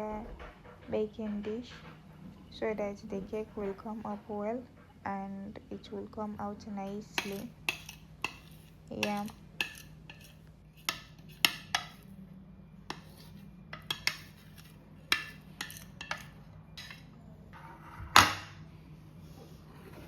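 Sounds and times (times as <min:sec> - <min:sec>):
low steady hum: 0:00.0 - 0:20.0
utensils and dishes clinking: 0:06.9 - 0:12.1, 0:12.9 - 0:17.2.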